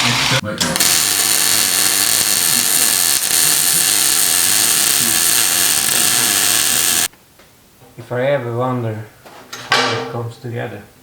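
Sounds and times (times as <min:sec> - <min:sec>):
power drill whining: 0:00.0 - 0:07.1.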